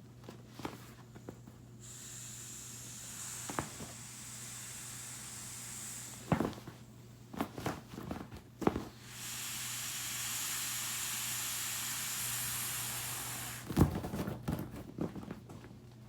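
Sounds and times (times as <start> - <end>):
air hissing out of beach ball: 1.2 - 7.3, 8.8 - 14.0.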